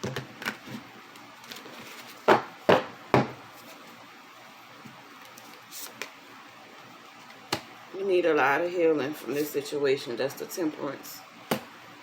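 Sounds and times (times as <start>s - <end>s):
knocks on a wooden table: 2.3s - 3.4s.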